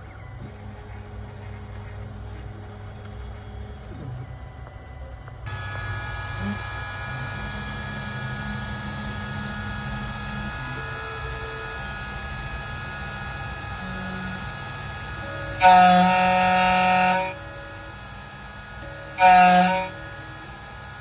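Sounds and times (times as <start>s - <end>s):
key cutting machine whining: 5.5s - 21.0s.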